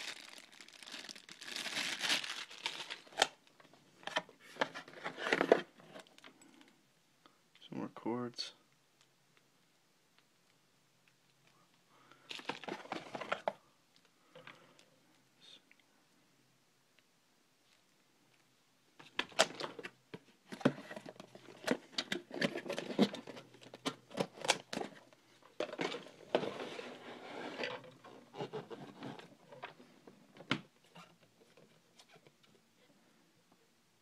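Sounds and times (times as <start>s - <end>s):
plastic packaging rustling: 0.0s - 6.3s.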